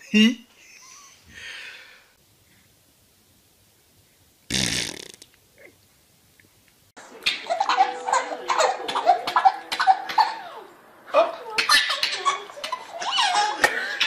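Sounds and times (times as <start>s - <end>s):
baby farting: 4.5s - 5.7s
people laughing: 7.4s - 10.7s, 11.7s - 14.0s.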